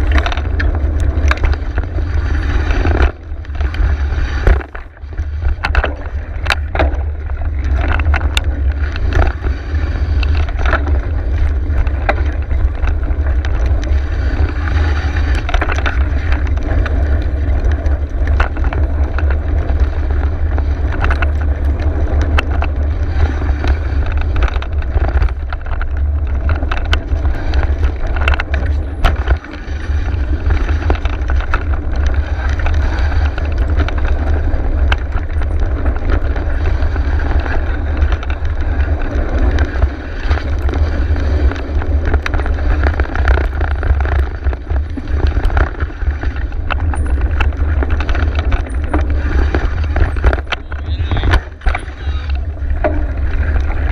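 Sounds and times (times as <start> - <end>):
bike clicks and rattles: 0.0 - 53.9
bike tyre noise: 0.0 - 53.9
wind rumble on microphone: 0.0 - 53.9.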